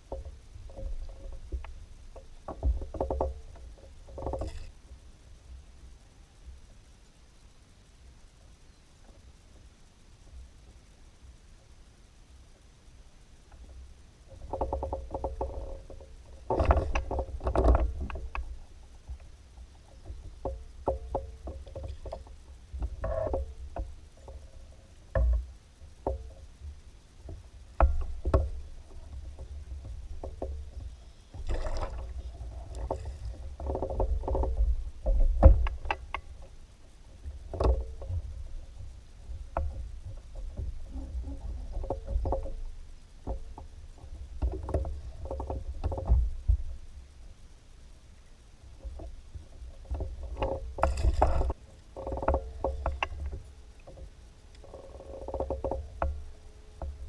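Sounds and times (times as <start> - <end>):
knocks and splashes against hull: 25.1 - 36.6, 37.2 - 46.9, 48.8 - 57.0.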